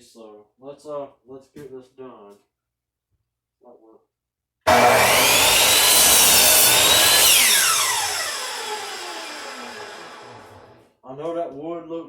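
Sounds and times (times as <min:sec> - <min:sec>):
electric power saw running: 0:04.7 - 0:10.8.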